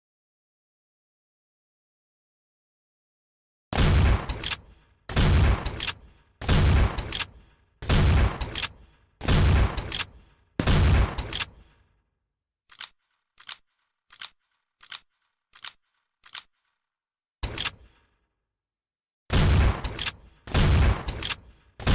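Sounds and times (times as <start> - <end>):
shotgun blasts: 3.8 - 11.7, 19.3 - 21.9
shotgun pump clicks: 4.3 - 4.6, 5.7 - 6.0, 9.8 - 10.2, 11.2 - 11.6, 12.7 - 16.8, 17.4 - 17.9.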